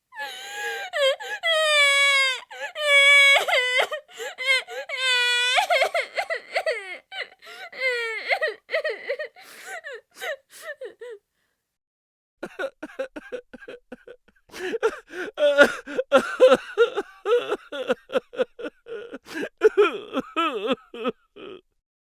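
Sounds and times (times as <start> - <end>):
cartoon voice sobbing: 12.4 - 21.7.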